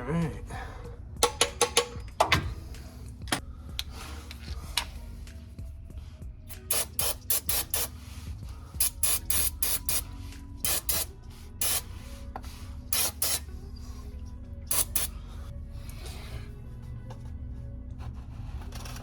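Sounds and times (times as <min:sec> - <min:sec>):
hissing spray bursts: 0:06.5 - 0:13.5, 0:14.7 - 0:15.1.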